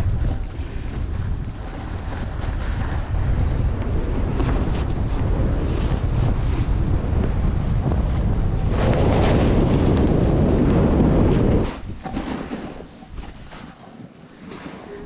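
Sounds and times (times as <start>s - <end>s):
wind rushing over microphone: 0.0s - 13.6s
snow sliding underfoot: 0.0s - 15.0s.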